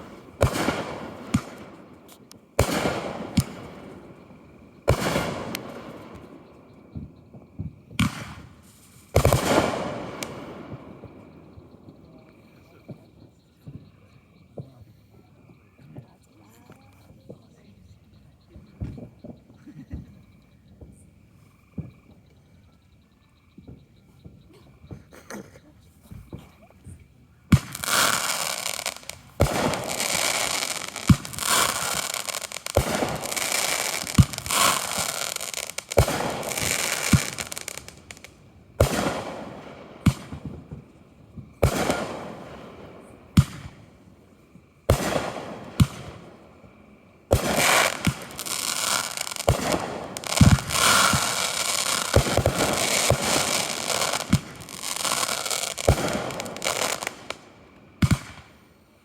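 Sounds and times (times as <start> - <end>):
fireworks crackling: 0.0 - 13.8, 26.3 - 58.8
fireworks bangs: 0.0 - 14.9, 26.1 - 58.7.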